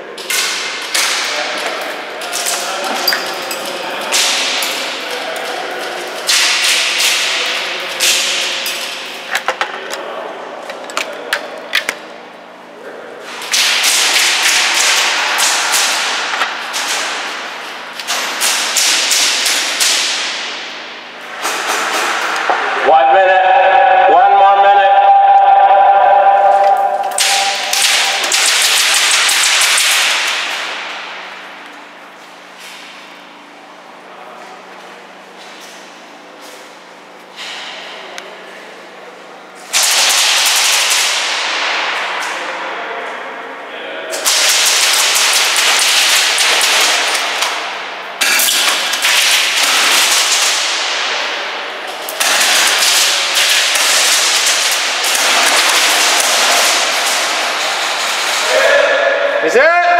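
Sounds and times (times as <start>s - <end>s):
airsoft guns firing: 13.4s - 17.4s, 27.2s - 31.2s, 39.7s - 42.0s, 44.2s - 51.4s, 52.2s - 58.4s.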